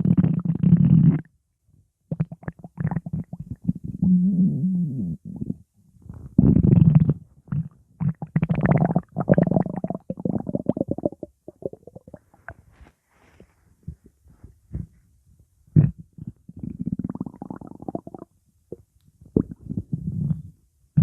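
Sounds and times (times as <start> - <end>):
stomach growling: 2.1 - 12.6, 15.8 - 21.0.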